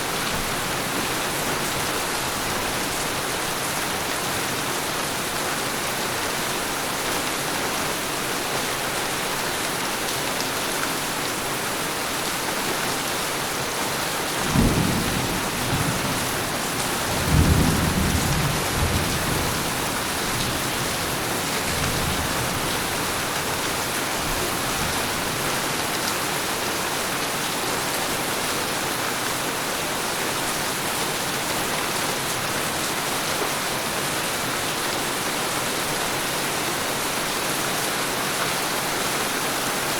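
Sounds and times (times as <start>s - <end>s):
heavy rain: 0.0s - 39.9s
wind: 0.0s - 39.9s
thunder rumbling: 14.5s - 23.0s.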